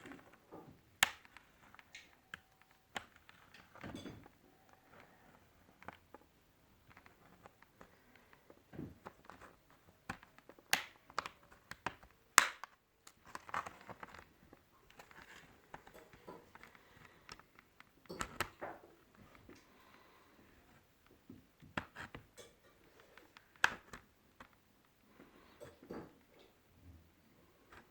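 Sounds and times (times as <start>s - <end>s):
plastic laptop parts clicking: 0.0s - 24.9s
plastic parts snapping: 1.0s - 5.0s, 8.8s - 14.3s, 14.9s - 19.6s.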